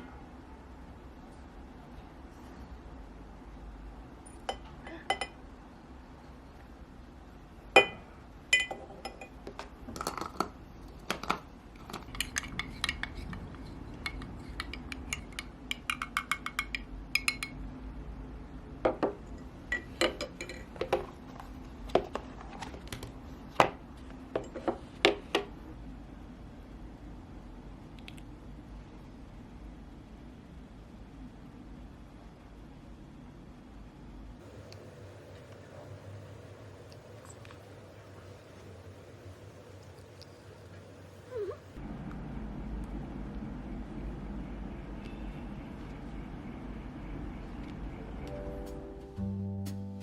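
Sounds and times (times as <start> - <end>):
dishes and utensils clinking: 4.3 - 5.4, 19.3 - 21.1.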